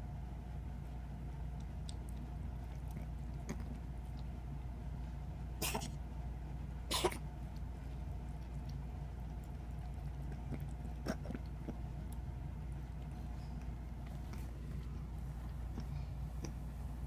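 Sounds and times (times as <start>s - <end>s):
kitten coughing: 5.6s - 6.0s, 6.8s - 7.4s, 10.9s - 11.4s.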